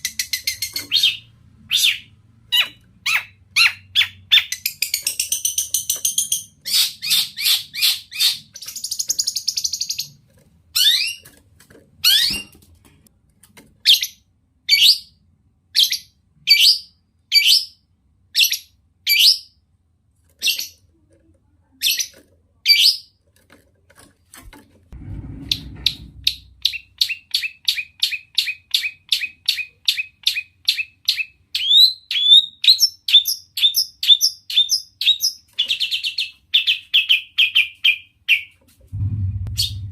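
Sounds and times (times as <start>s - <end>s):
low rumble: 24.9s - 26.7s, 38.9s - 39.9s.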